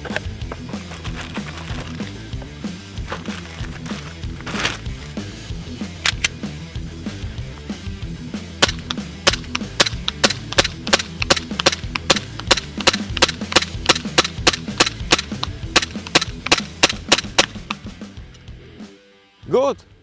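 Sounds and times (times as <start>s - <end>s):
background music: 0.0s - 20.0s
airsoft pistol shots: 8.6s - 17.8s.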